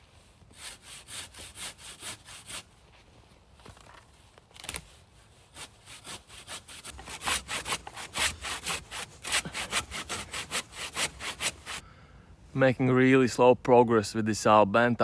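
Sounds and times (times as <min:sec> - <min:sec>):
hand saw cutting wood: 0:00.5 - 0:02.7, 0:05.5 - 0:11.8.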